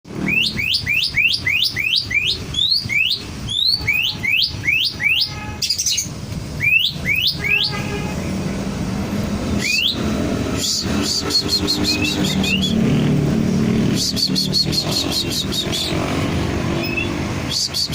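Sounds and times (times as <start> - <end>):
bird whistling rising call: 6.6 - 7.8, 9.6 - 12.9, 14.0 - 17.9.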